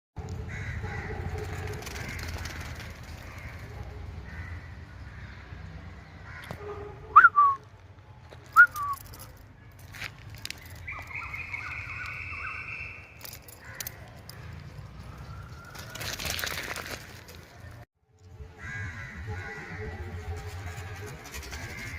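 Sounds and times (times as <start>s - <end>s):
dog recall whistles: 7.2s - 7.6s, 8.6s - 9.1s.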